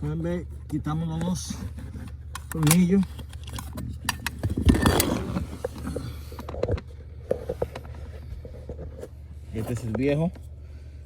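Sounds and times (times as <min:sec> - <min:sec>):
clicks and scraping: 0:01.4 - 0:09.2.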